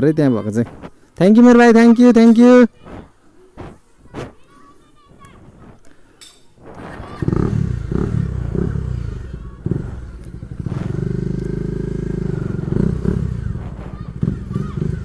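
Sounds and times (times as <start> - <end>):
motorcycle engine loud exhaust: 6.6 - 15.0.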